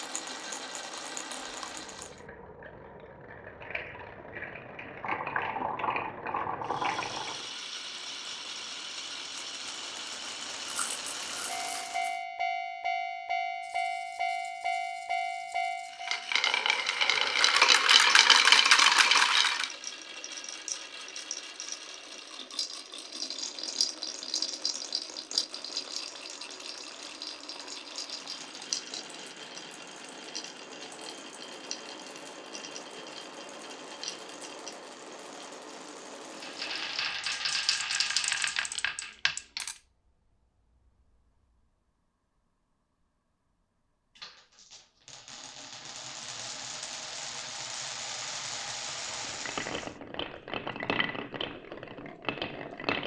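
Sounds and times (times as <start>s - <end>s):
marbles rattling clatter: 0.0s - 2.3s, 3.2s - 12.2s, 13.6s - 39.8s, 44.2s - 53.0s
marbles rolling and clicking on track: 0.0s - 12.2s, 13.6s - 39.8s, 44.2s - 53.0s
level-crossing bell ringing: 10.6s - 17.5s.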